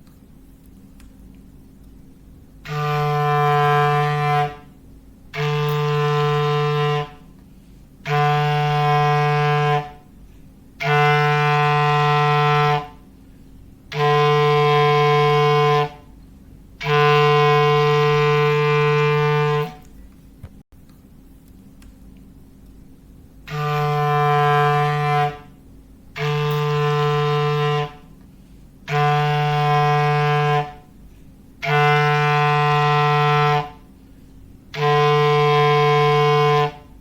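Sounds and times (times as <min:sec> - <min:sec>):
foghorn blasts: 0:02.6 - 0:13.2, 0:13.8 - 0:16.2, 0:16.8 - 0:19.9, 0:23.4 - 0:34.0, 0:34.7 - 0:37.0.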